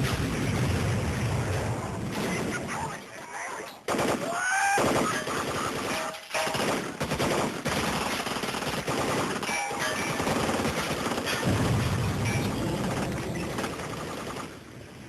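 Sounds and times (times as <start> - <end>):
automatic gunfire: 3.9 - 14.6.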